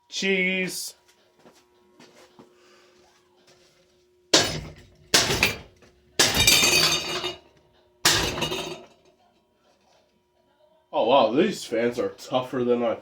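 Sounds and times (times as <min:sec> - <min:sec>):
ceiling fan being smashed: 0:04.3 - 0:09.0
clattering and clinking parts: 0:04.4 - 0:09.1.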